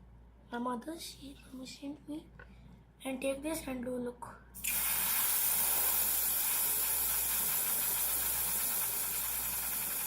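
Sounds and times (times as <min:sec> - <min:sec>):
aerosol spray hissing: 0:04.6 - 0:10.0.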